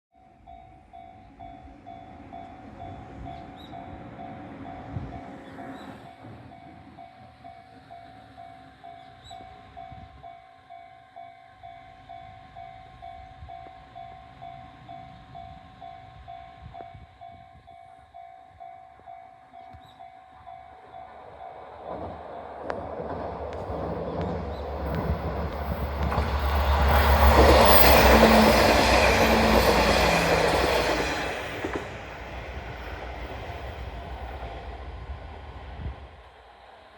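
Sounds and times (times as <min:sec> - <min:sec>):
diesel train passing: 0:01.1 - 0:10.0, 0:19.8 - 0:36.9.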